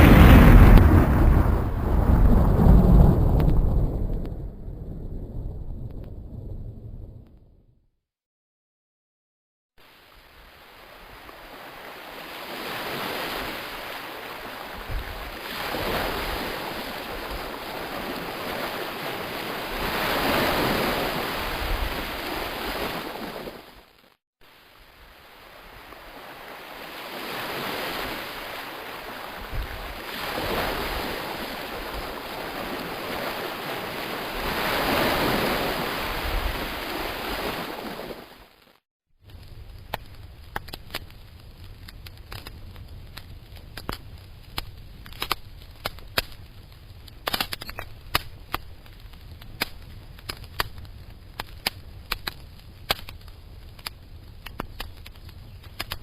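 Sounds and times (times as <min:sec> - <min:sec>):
ocean waves washing ashore: 0:00.0 - 0:03.9, 0:09.8 - 0:38.8.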